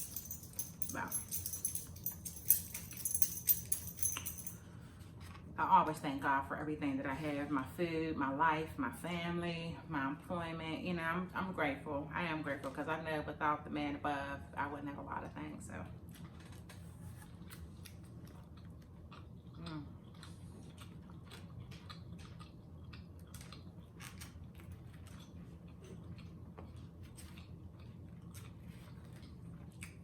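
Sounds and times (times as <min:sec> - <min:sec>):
low steady hum: 0:00.0 - 0:15.9
person chewing: 0:18.3 - 0:30.0.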